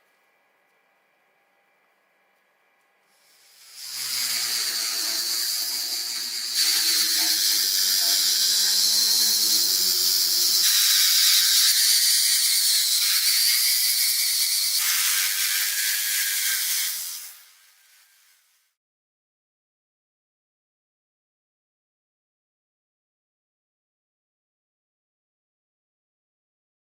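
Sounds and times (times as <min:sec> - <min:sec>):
high-pressure spray hissing: 0:03.1 - 0:18.6.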